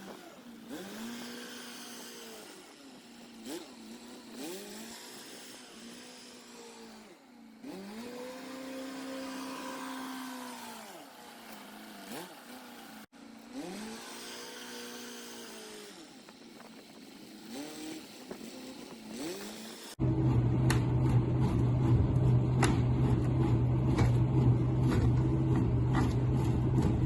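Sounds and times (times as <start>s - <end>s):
truck engine revving: 0.0s - 2.7s, 7.6s - 16.0s, 17.3s - 27.0s.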